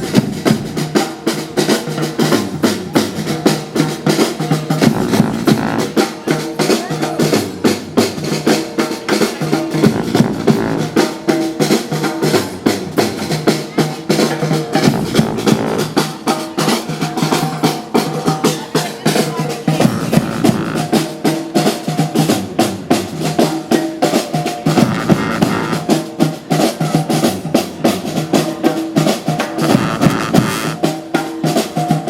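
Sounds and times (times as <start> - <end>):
snare and bass drum beat: 0.0 - 32.0
horns playing melody: 4.8 - 6.2, 9.7 - 11.3, 14.8 - 16.1, 19.8 - 21.0, 24.7 - 26.1, 29.6 - 30.9.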